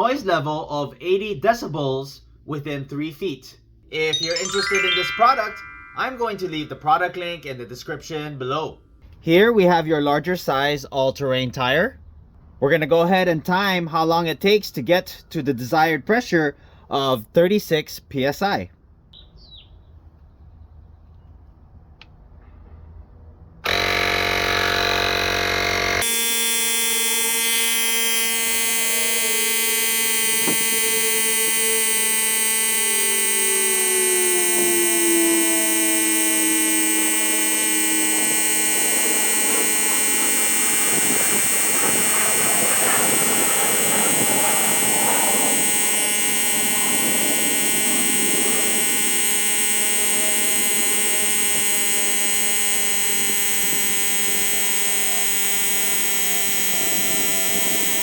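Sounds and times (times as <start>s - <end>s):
air compressor buzzing hum: 23.6s - 58.0s.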